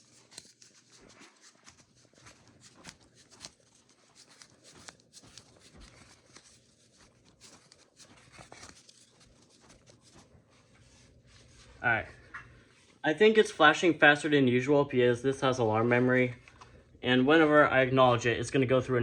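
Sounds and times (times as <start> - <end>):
handling noise clicks and rustles: 0.0 - 12.6.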